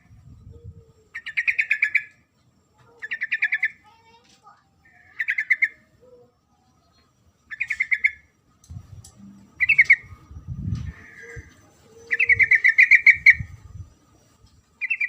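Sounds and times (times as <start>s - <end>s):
bulbul calling: 0.0s - 2.2s, 2.8s - 4.2s, 4.8s - 6.3s, 6.9s - 8.4s, 9.1s - 13.6s, 14.8s - 15.0s
soft bird chatter: 0.0s - 15.0s
low rumble: 8.6s - 11.7s.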